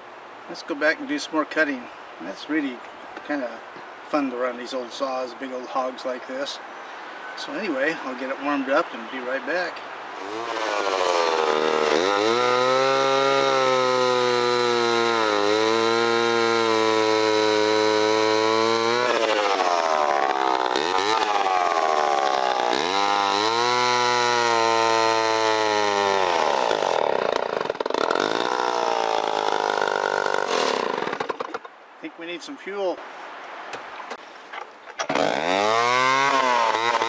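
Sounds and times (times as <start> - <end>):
two-stroke chainsaw revving: 10.2 - 31.7, 35.1 - 37.0.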